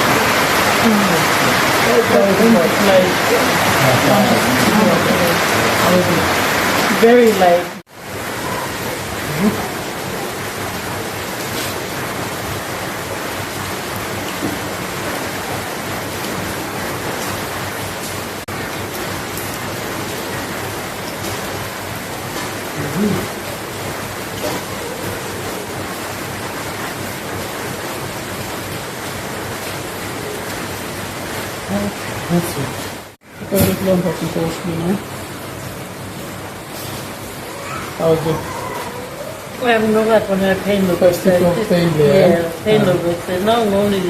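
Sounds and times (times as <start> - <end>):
faint voice: 0.7 - 7.7, 8.4 - 10.3, 22.8 - 23.4, 37.5 - 40.0, 41.5 - 43.4.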